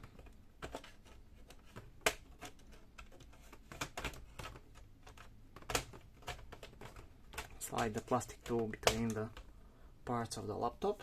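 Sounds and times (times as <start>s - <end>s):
plastic clicks and snaps: 0.0s - 9.5s.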